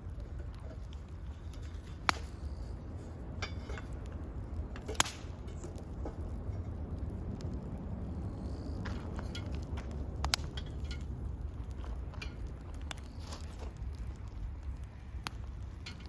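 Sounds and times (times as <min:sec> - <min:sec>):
low rumble: 0:00.0 - 0:16.0
sharp cracks: 0:01.5 - 0:02.6, 0:04.0 - 0:06.3, 0:09.0 - 0:16.0.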